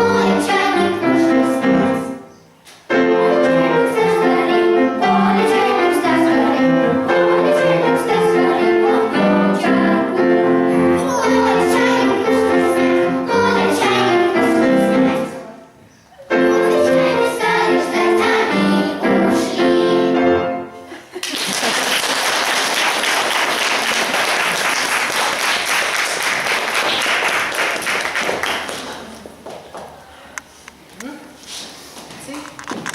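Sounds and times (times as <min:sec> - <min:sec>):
children singing: 0:00.0 - 0:02.2, 0:02.9 - 0:15.6, 0:16.2 - 0:20.6
piano accompaniment: 0:00.0 - 0:21.1
audience applauding: 0:21.2 - 0:29.2.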